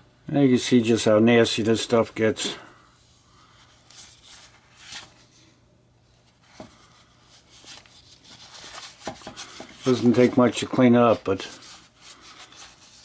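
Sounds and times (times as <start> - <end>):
rubbing: 7.2 - 13.0.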